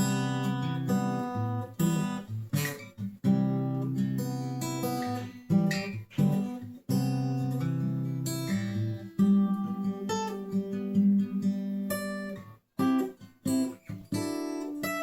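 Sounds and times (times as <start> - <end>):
acoustic guitar strumming: 0.0 - 15.0.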